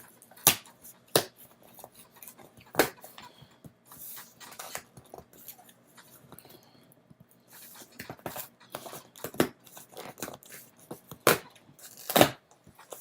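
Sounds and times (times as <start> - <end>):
tape and cardboard tearing: 9.3 - 12.4.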